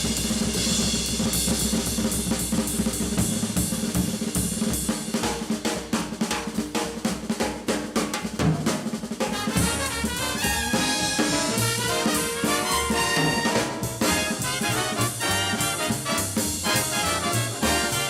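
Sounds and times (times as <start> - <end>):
jazz drum solo: 0.0 - 18.0
sustained brass chords: 9.6 - 18.0.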